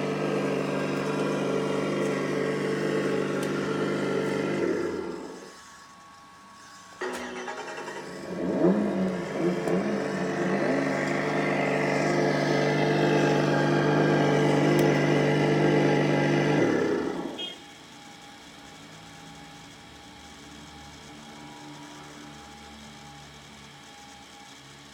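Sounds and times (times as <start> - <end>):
simulated car engine revving: 0.0 - 5.9, 6.6 - 17.6.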